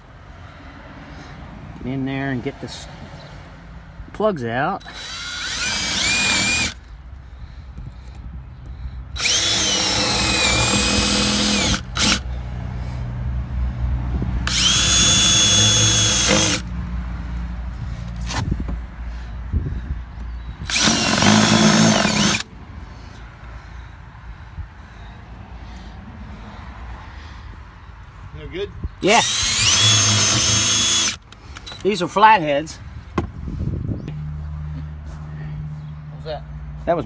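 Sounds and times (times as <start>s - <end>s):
power drill motor whining: 4.8s - 6.8s, 9.1s - 12.2s, 14.4s - 16.6s, 20.6s - 22.5s, 29.0s - 31.9s.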